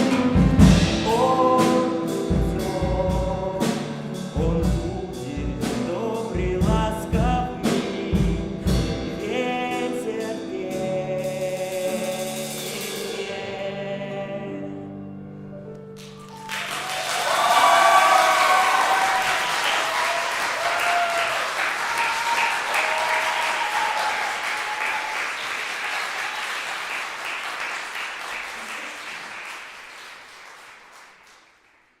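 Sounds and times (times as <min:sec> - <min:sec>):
audience applauding: 0:16.0 - 0:32.0.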